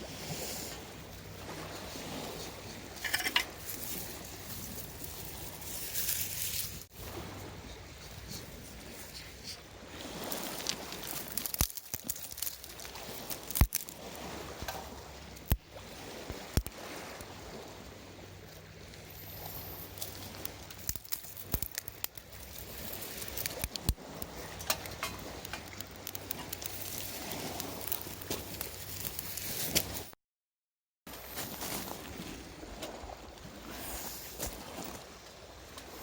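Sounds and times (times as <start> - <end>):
campfire crackling: 9.9 - 17.3, 18.5 - 30.1.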